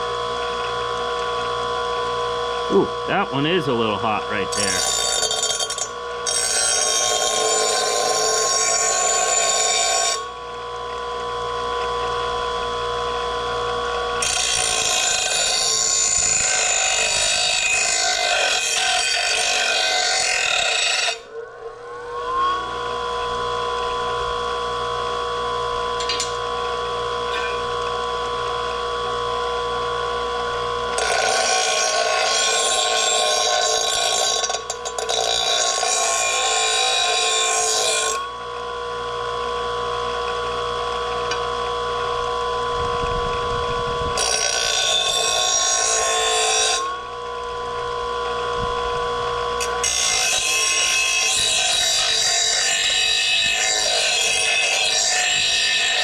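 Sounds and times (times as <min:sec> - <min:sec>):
grinder motor whining: 0:00.0 - 0:56.0
grinding against metal blade: 0:02.9 - 0:10.3, 0:14.0 - 0:21.3, 0:25.8 - 0:27.9, 0:30.9 - 0:38.4, 0:44.2 - 0:47.6, 0:49.5 - 0:56.0.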